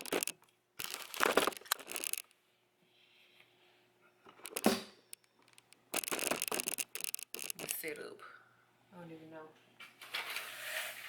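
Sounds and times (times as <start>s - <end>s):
crinkling and rubbing: 0.0s - 2.3s, 4.4s - 7.9s.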